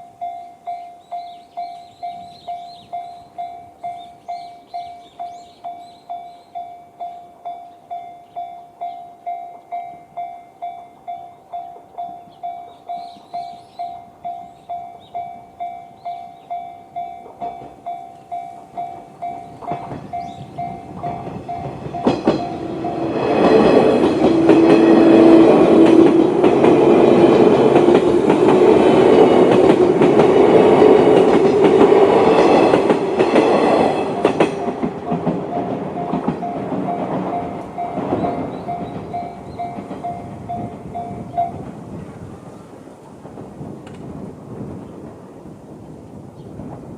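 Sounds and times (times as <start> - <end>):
level crossing bell ringing: 0.0 - 23.2
electric train rumbling past: 0.0 - 46.9.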